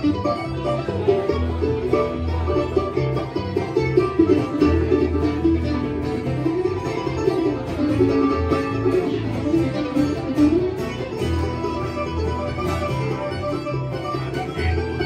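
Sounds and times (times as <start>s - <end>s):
country band playing: 0.0s - 15.0s.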